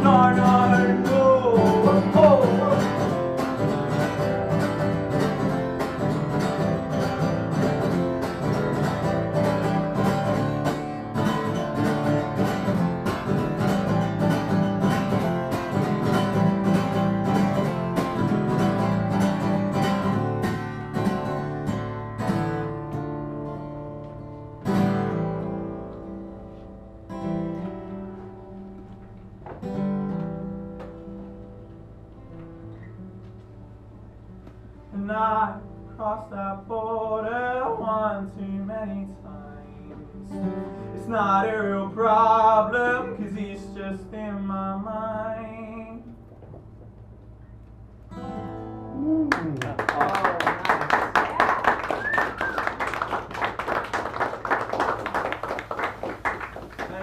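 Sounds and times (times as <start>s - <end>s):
acoustic guitar strumming: 0.0s - 50.0s.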